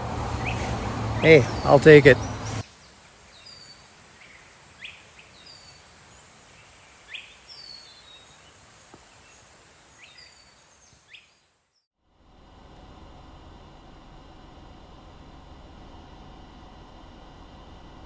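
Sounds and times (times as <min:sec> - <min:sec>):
bird calls: 0:00.0 - 0:11.6.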